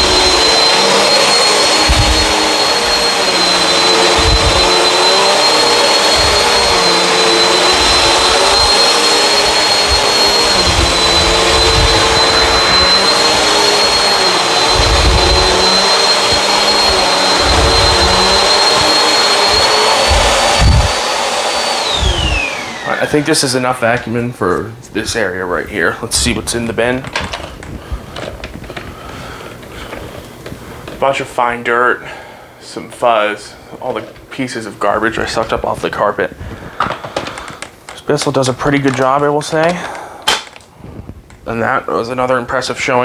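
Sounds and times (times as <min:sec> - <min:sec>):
vacuum bumping on carpet: 0:00.0 - 0:23.2
vacuum cleaner motor whine: 0:00.0 - 0:25.5.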